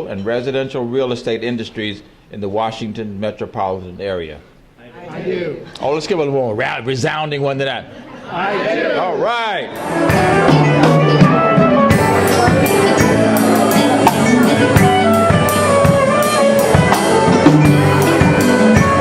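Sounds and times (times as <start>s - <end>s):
upbeat drum and guitar music: 9.7s - 19.0s.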